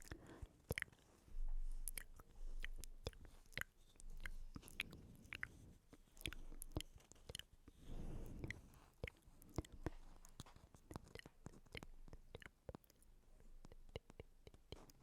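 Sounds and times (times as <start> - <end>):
wet mouth clicks and smacks: 0.0 - 1.0, 1.7 - 7.6, 8.4 - 15.0
soft hushing noise: 0.0 - 12.2.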